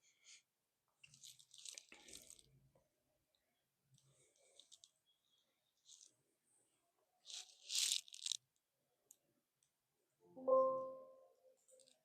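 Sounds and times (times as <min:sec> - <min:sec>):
scratchy rustle: 0:07.3 - 0:08.4.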